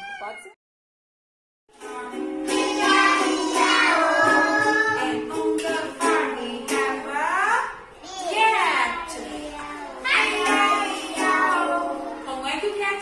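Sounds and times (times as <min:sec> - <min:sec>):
children's song with instruments: 0:01.7 - 0:12.7
child singing: 0:01.8 - 0:07.0, 0:08.0 - 0:12.3.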